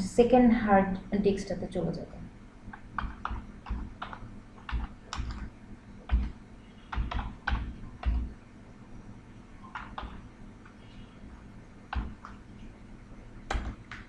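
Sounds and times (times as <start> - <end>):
keyboard typing: 2.7 - 8.4, 9.6 - 12.7, 13.5 - 14.0.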